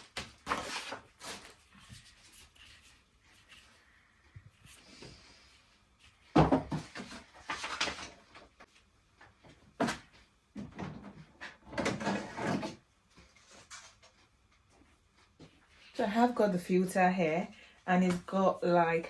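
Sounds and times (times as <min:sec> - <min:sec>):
plastic parts rustling and clattering: 0:06.2 - 0:14.2.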